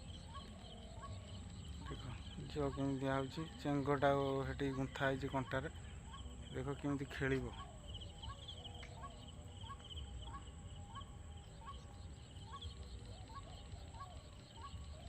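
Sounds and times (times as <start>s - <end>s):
pulsing insect trill: 0.0s - 15.0s.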